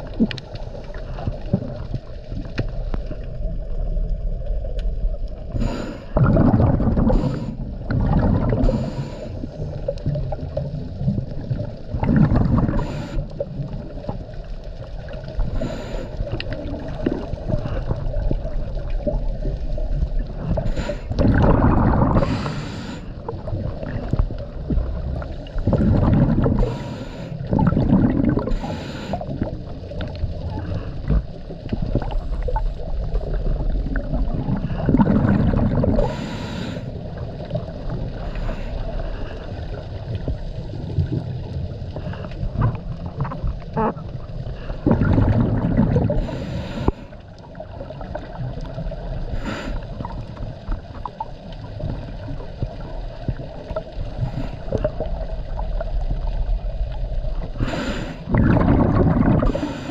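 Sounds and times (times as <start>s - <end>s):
exhaled bubbles gurgling: 0.0s - 59.9s
diver inhaling through regulator: 5.5s - 9.8s, 12.4s - 13.5s, 15.4s - 16.7s, 20.5s - 23.3s, 25.7s - 29.6s, 34.6s - 37.2s, 38.1s - 39.6s, 43.8s - 47.3s, 49.3s - 50.2s, 54.1s - 55.1s, 57.5s - 59.9s.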